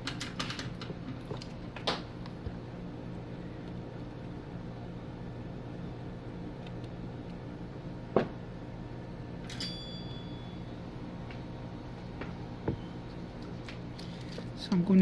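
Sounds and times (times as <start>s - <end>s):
metallic clink with ring: 9.5s - 10.7s.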